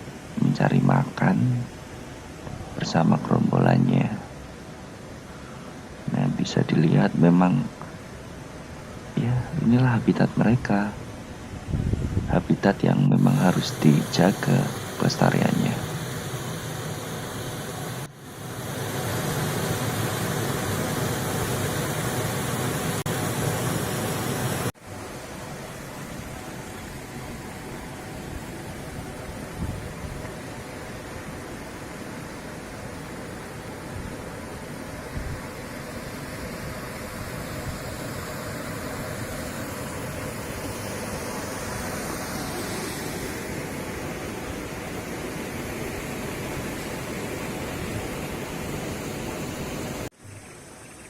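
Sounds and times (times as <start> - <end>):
fast-flowing water rushing: 13.2 - 50.1.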